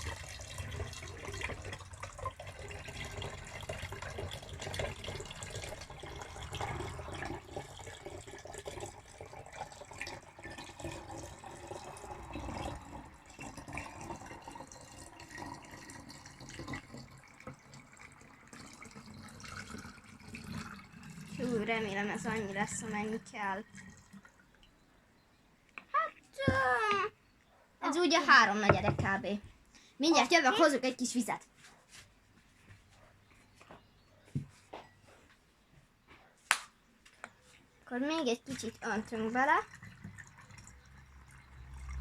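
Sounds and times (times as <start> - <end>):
water pouring through funnel: 0.0 - 24.8, 37.9 - 42.0.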